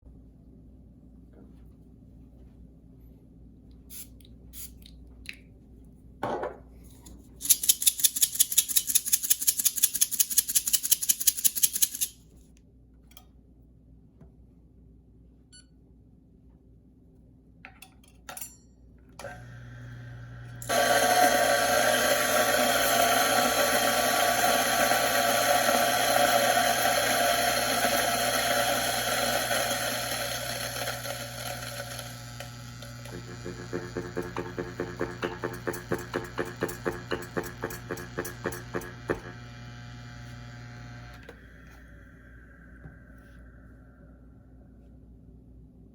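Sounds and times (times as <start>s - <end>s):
coffee grinder grinding: 19.3s - 41.4s.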